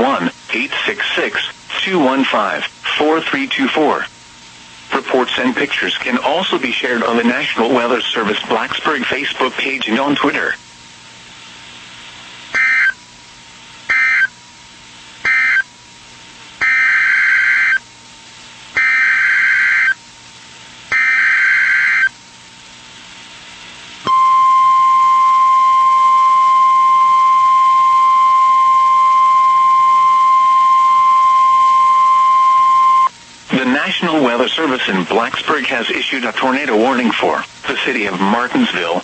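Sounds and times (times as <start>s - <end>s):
buzzy data bursts: 12.5s - 13.0s, 13.9s - 14.4s, 15.2s - 15.7s, 16.6s - 17.8s, 18.7s - 20.0s, 20.9s - 22.2s
steady warning alarm tone: 12.6s - 13.0s, 13.9s - 14.4s, 15.3s - 15.7s, 16.6s - 17.9s, 18.8s - 20.0s, 20.9s - 22.2s, 24.1s - 33.1s.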